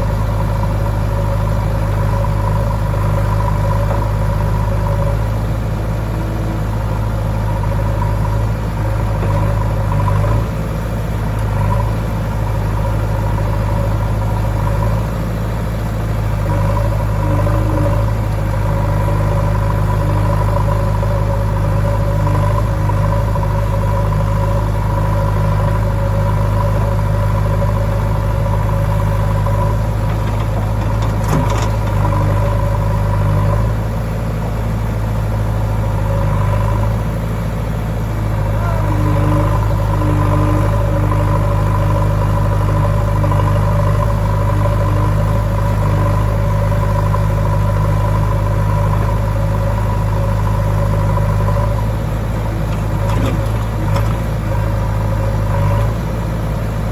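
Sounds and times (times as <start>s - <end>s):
diesel engines running: 0.0s - 56.9s
brief clatter: 30.0s - 32.5s, 52.7s - 54.4s.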